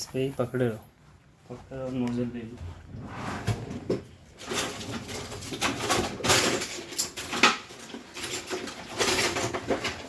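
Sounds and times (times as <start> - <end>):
equipment clattering and scraping: 2.6 - 10.0.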